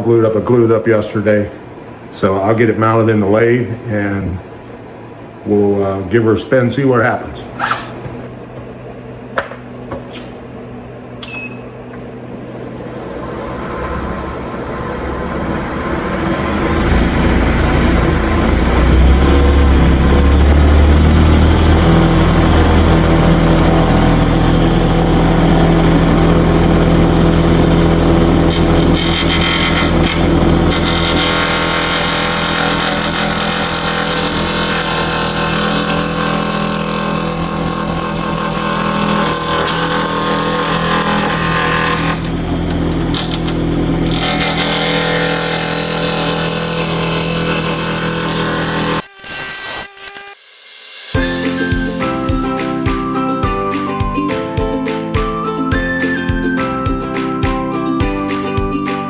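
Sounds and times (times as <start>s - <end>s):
wood lathe motor humming: 12.0s - 50.4s.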